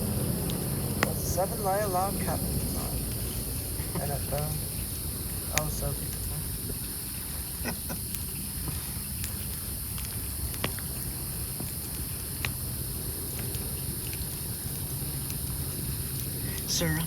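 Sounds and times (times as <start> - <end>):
low rumble: 0.0 - 7.0
campfire crackling: 0.0 - 17.0
fire popping: 0.0 - 17.0.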